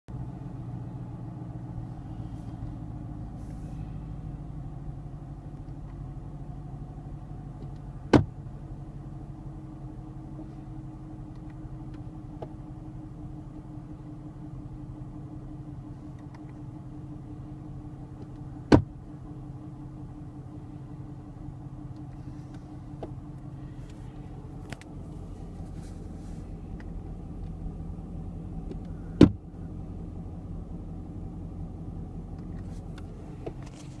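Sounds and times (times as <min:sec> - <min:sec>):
car engine humming: 0:00.1 - 0:34.0
sharp loud pops in a car: 0:07.6 - 0:08.4, 0:18.2 - 0:19.0, 0:28.7 - 0:29.5.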